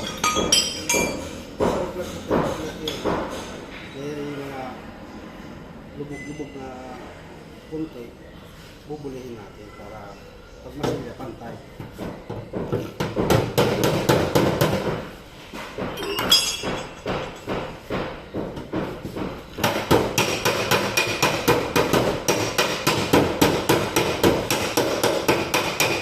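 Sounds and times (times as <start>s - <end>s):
hammer tapping car body panel: 11.9s - 15.2s, 16.6s - 26.0s.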